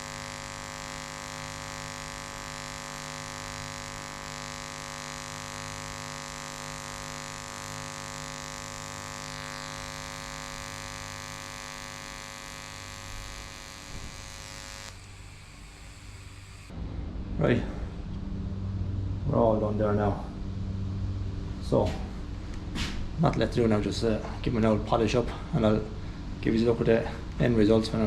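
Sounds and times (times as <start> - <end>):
welding arc buzzing: 0.0 - 16.8.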